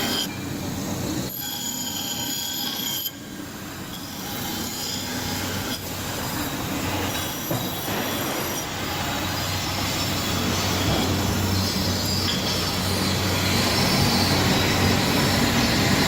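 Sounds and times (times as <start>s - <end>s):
grinding wheel hissing and squealing: 0.0s - 3.2s, 3.9s - 16.0s
low motor hum: 10.2s - 16.0s.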